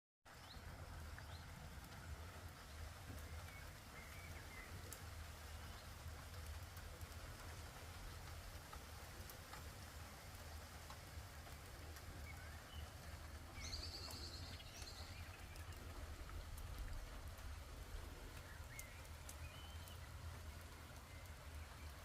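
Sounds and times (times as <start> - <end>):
steady rain: 0.3 - 22.0
small birds twittering: 0.4 - 1.5, 2.2 - 6.0, 11.4 - 22.0.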